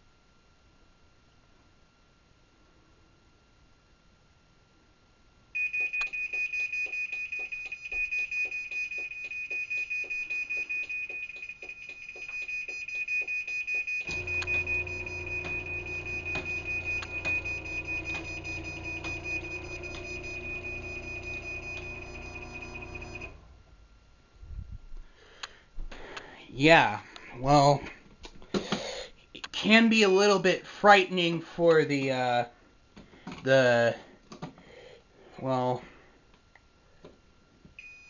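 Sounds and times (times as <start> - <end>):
high-pitched pulsing beep: 5.6 - 23.3
garage door motor humming: 5.6 - 23.8.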